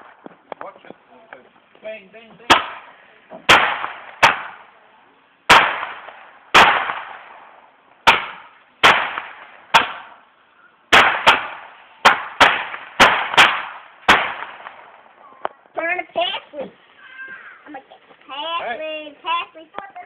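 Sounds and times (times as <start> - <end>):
fireworks bangs: 1.8 - 10.3, 10.9 - 15.8.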